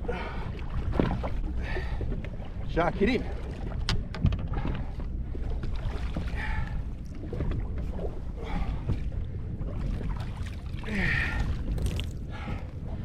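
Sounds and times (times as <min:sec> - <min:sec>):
water around a boat: 0:00.0 - 0:13.0
wind: 0:00.0 - 0:13.0.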